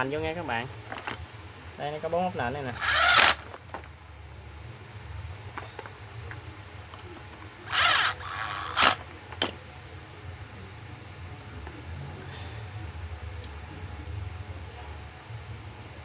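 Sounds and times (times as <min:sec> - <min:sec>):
drill click: 0:02.8 - 0:03.6, 0:07.0 - 0:09.6
power drill running: 0:02.8 - 0:03.6, 0:07.1 - 0:09.1.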